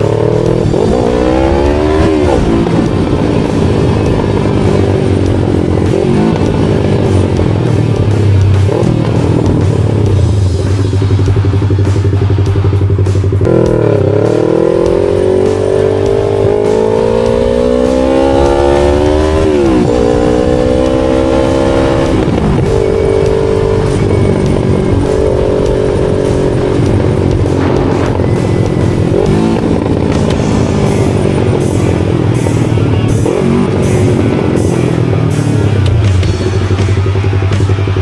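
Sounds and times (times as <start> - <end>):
motorcycle engine revving: 0.0 - 38.0.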